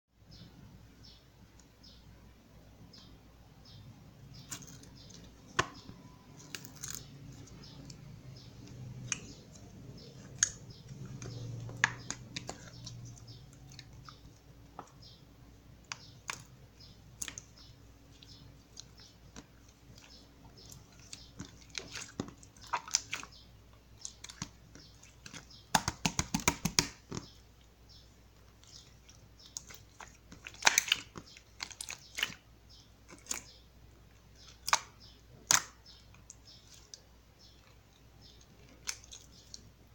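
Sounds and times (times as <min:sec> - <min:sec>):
slime crackling: 0:28.5 - 0:32.4.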